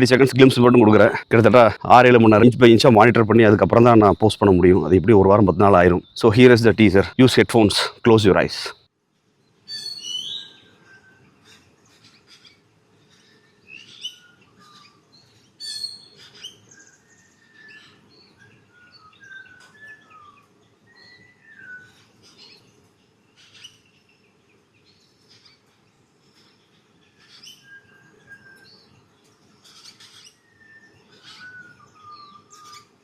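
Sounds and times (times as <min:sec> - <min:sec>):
birds chirping and whistling: 0:00.0 - 0:08.2, 0:09.7 - 0:11.0, 0:13.2 - 0:22.7, 0:29.6 - 0:33.0
faint low background hiss: 0:00.0 - 0:09.7.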